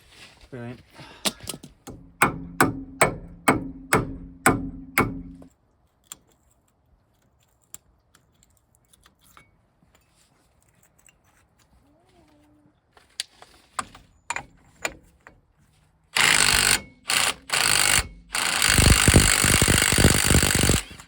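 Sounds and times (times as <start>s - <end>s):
hammer striking metal: 1.9s - 5.4s.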